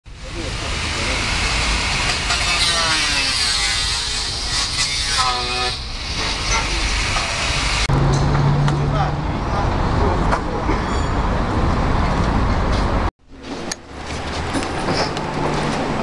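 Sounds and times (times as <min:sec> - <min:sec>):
road traffic noise: 0:00.1 - 0:16.0
vehicle passing: 0:07.9 - 0:16.0.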